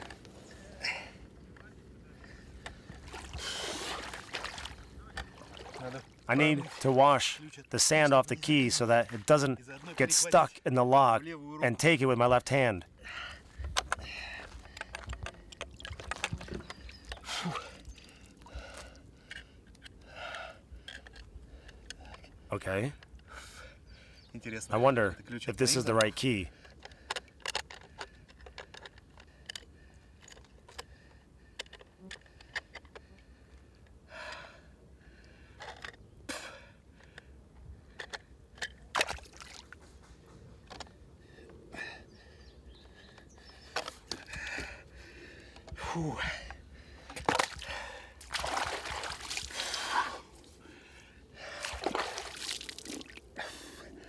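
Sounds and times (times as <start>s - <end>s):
water splashing and dripping: 3.1s - 7.0s, 39.0s - 39.8s, 47.2s - 50.5s, 51.5s - 53.3s
man gasping and breathing hard: 44.3s - 48.2s.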